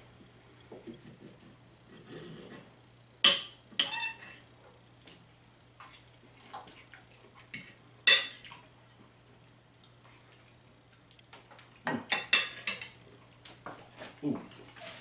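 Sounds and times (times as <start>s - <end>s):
cutlery clinking on a plate: 11.9s - 13.0s.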